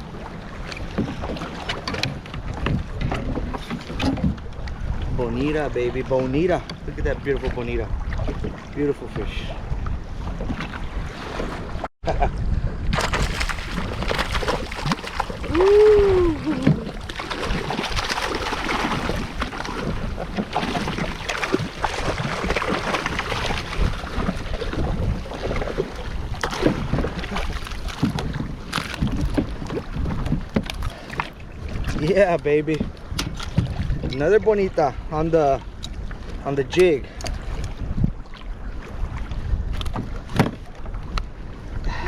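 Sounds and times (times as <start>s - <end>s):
wind buffeting microphone: 0.0s - 42.0s
small water splashes: 12.9s - 32.2s.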